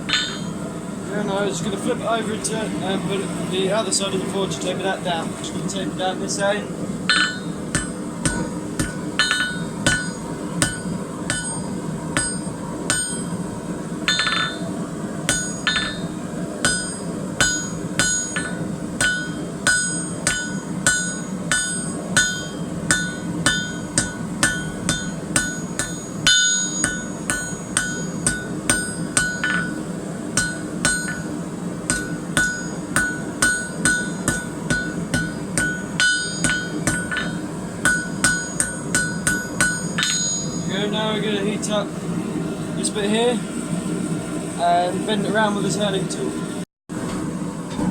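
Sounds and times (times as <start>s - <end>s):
hammer ringing on anvil: 0.0s - 0.6s, 7.1s - 13.5s, 14.1s - 14.7s, 15.3s - 40.9s
steady low hum: 0.0s - 47.9s.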